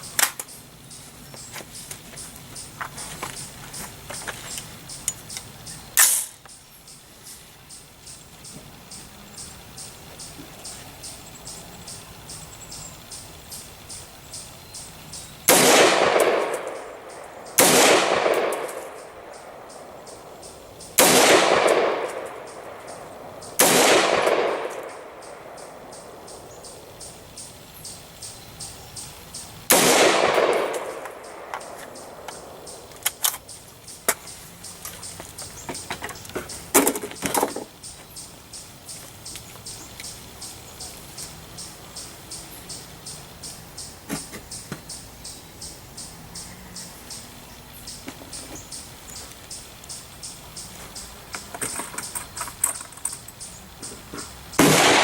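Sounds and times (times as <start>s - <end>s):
gunshots with echo: 15.5s - 26.9s, 29.7s - 32.9s, 54.6s - 55.0s
metallic clicks and clanks: 51.3s - 54.3s.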